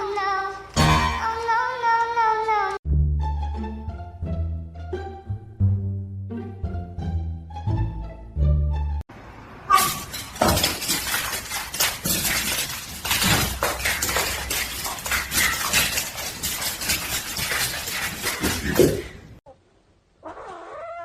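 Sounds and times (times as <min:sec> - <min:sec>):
music: 0:00.8 - 0:01.5, 0:02.9 - 0:09.0
clattering and crackling with knocks: 0:09.8 - 0:19.4.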